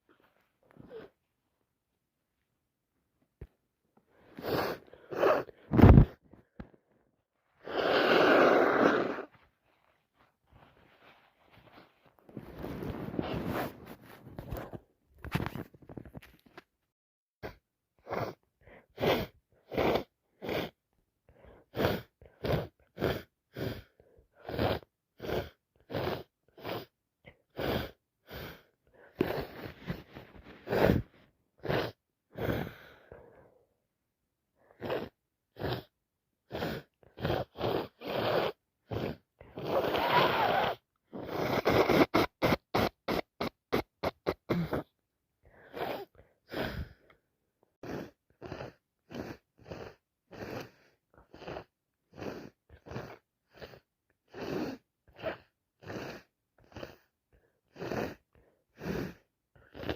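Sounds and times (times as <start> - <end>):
person sniffing: 4.1 - 6.2, 7.6 - 9.5, 10.6 - 14.8, 17.4 - 20.8, 21.4 - 26.9, 27.5 - 33.6, 36.5 - 44.9, 45.5 - 47.2, 57.7 - 59.9
breath blasts through nose: 4.3 - 6.2, 7.6 - 9.3, 36.5 - 44.9.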